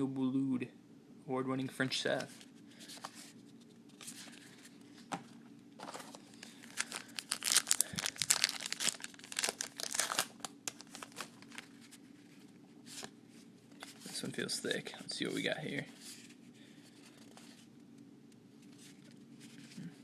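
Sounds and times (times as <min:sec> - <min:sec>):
wrapper tearing and crinkling: 0:05.8 - 0:11.7.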